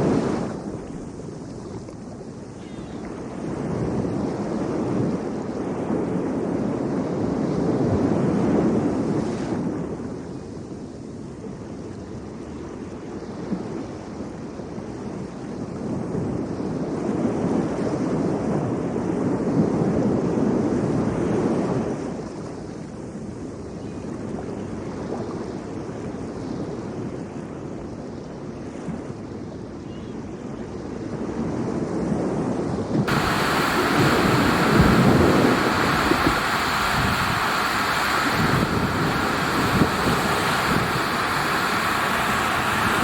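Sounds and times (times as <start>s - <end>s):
outdoor rushing noise: 33.1s - 43.0s.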